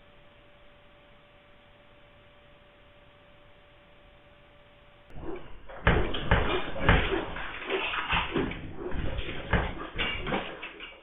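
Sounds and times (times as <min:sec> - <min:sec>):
faint constant hum: 0:00.0 - 0:11.0
loud rattling and clattering: 0:05.1 - 0:11.0.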